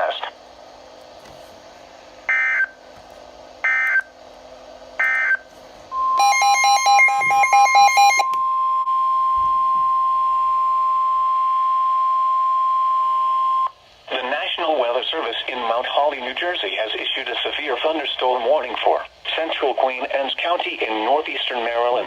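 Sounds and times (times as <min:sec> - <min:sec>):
rapid alternating beeping alarm: 0:02.3 - 0:02.8, 0:03.6 - 0:04.0, 0:05.0 - 0:13.7
steady warning alarm tone: 0:02.3 - 0:02.8, 0:03.6 - 0:04.1, 0:05.0 - 0:13.8.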